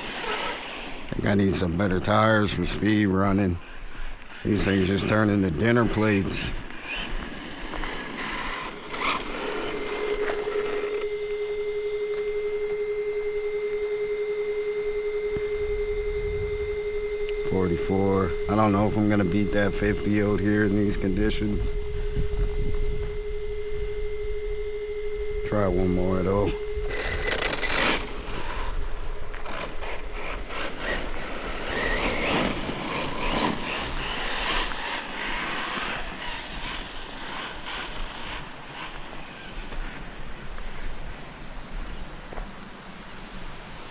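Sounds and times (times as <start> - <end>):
electric motor whining: 0.0 - 2.2, 4.1 - 40.1
tyres on dirt: 0.0 - 15.8, 16.6 - 21.8, 25.4 - 40.2
steady electronic tone: 4.5 - 39.0
wind on microphone: 18.4 - 25.8.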